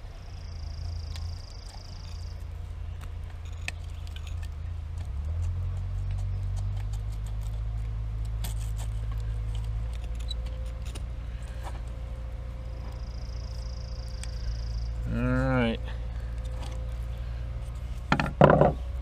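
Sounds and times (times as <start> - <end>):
low engine drone: 0.0 - 19.0.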